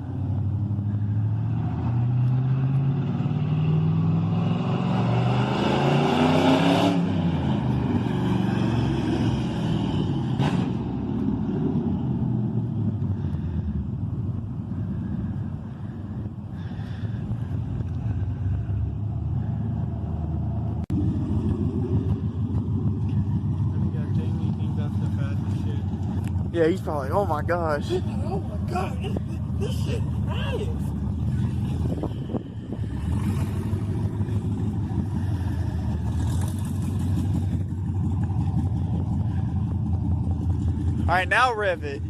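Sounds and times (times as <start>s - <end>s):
car engine through open headers: 0.0s - 42.0s.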